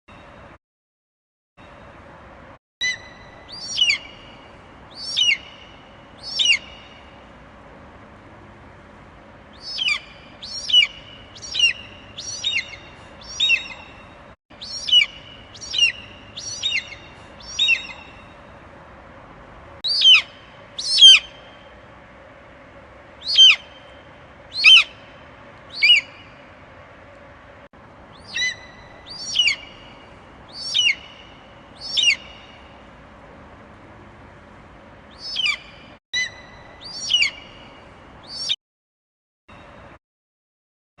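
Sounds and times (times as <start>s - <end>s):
eagle piercing cries: 9.6s - 13.8s, 19.9s - 21.4s, 23.2s - 23.8s, 24.5s - 25.0s, 28.2s - 29.8s, 30.5s - 31.2s, 31.8s - 32.4s, 35.2s - 37.5s.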